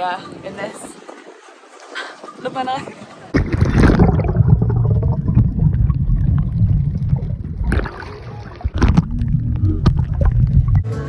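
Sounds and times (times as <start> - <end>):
low engine rumble: 4.4 - 11.0.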